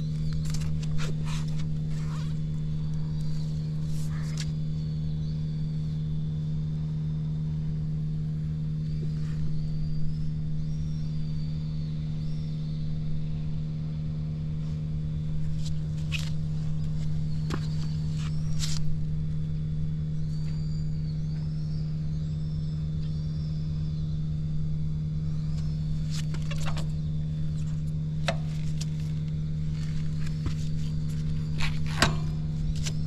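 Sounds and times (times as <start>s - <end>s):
motorcycle engine idling: 14.4s - 33.0s.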